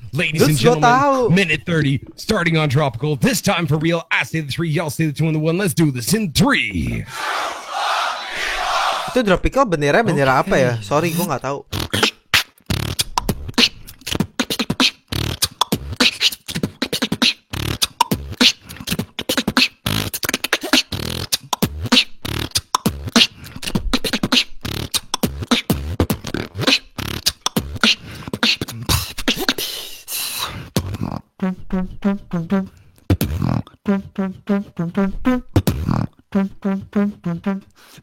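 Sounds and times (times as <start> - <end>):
beatboxing: 0.0 - 1.1, 10.3 - 38.0.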